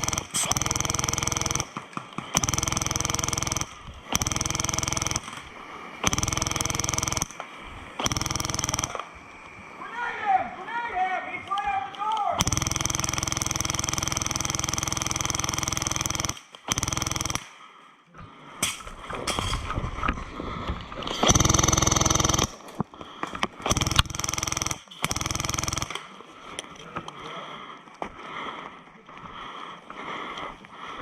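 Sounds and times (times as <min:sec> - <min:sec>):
airsoft gun firing full-auto: 0:00.0 - 0:07.4, 0:08.0 - 0:09.2, 0:12.4 - 0:17.6, 0:21.2 - 0:22.6, 0:23.6 - 0:26.2.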